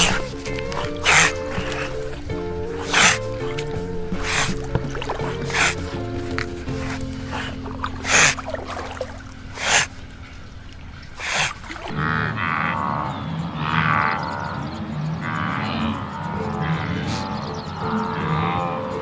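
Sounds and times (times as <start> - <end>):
low hum: 0.0 - 12.6
wavering animal calls: 0.0 - 19.0.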